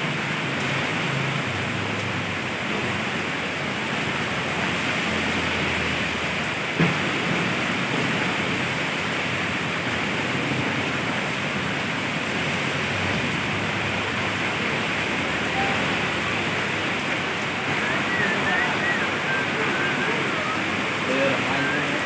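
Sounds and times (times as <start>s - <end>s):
rain falling: 0.0s - 22.0s.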